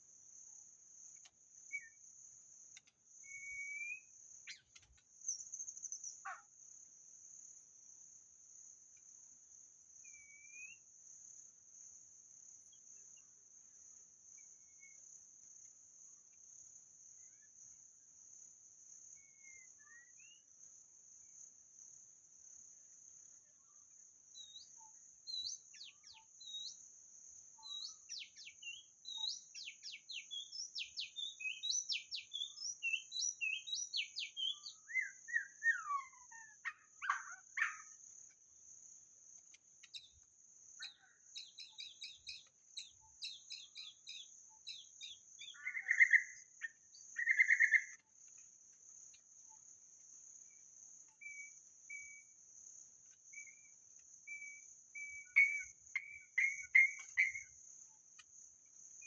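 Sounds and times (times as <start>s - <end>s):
high insect drone: 0.0s - 59.0s
bird singing whistled notes: 1.7s - 2.0s, 3.2s - 4.7s, 10.0s - 10.9s, 19.2s - 20.5s, 24.4s - 26.8s, 27.6s - 37.9s, 40.8s - 48.0s, 51.2s - 52.3s, 53.3s - 53.7s, 54.3s - 57.5s.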